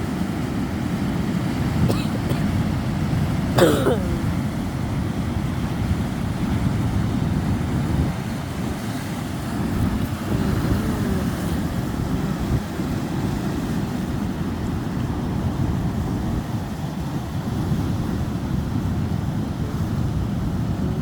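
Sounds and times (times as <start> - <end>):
surf washing on beach: 5.0 - 21.0
wind rumble on microphone: 5.4 - 21.0.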